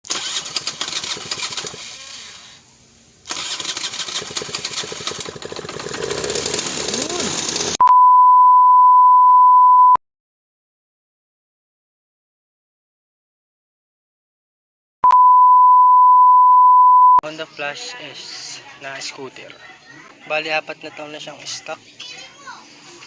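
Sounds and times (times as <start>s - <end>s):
scooter engine running: 3.3s - 7.8s
high single-pitch beep: 7.8s - 10.0s, 15.0s - 17.2s.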